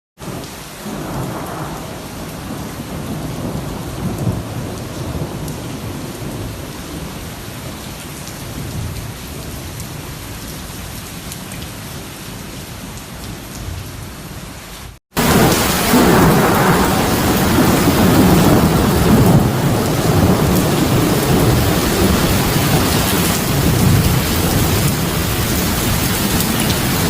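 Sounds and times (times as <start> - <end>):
heavy rain pouring: 0.2 - 27.0
rolling thunder: 15.2 - 27.0.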